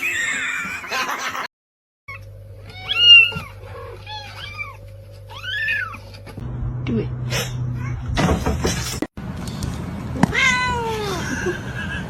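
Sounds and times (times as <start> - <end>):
cat meowing: 2.1 - 6.0, 10.2 - 11.1
low hum: 2.1 - 10.3.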